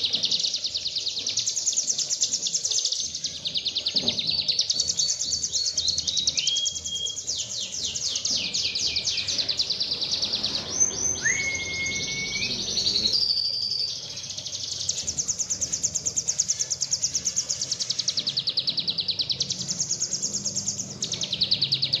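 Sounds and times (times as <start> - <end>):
songbird trilling: 0.0 - 22.0
bird whistling: 5.0 - 14.2.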